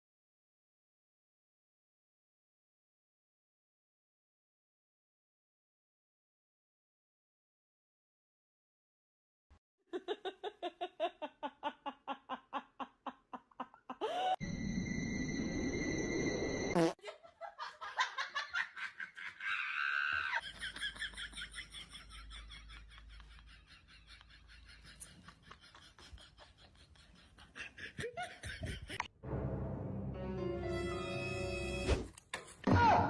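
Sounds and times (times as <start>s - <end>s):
people laughing: 9.9s - 14.4s, 17.0s - 29.1s.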